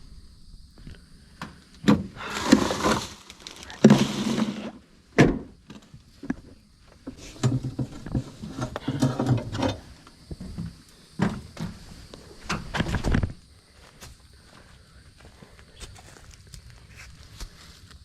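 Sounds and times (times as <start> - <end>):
scraping and rustling: 2.2 - 4.8, 7.0 - 10.0.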